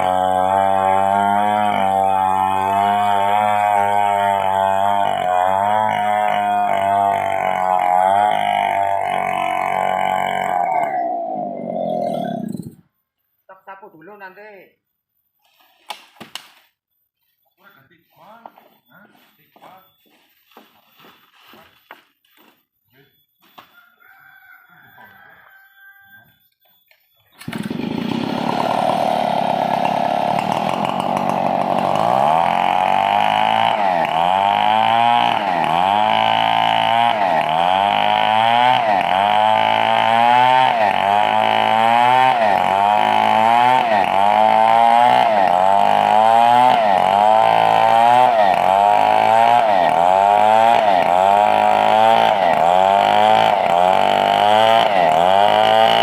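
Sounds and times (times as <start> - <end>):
power saw cutting log: 0.0 - 12.8, 27.4 - 56.0.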